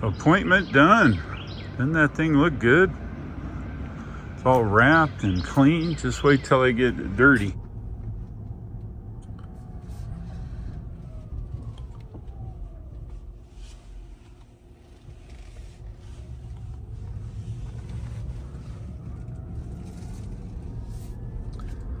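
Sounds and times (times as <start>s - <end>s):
road and tyre rumble: 0.0s - 22.0s.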